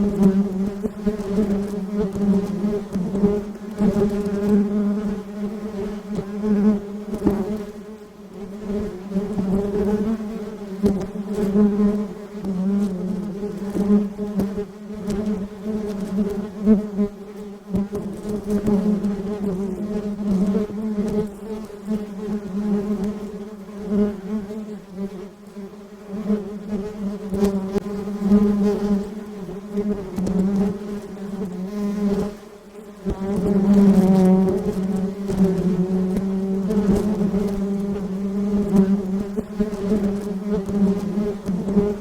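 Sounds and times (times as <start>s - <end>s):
honeybees buzzing: 0.0s - 42.0s.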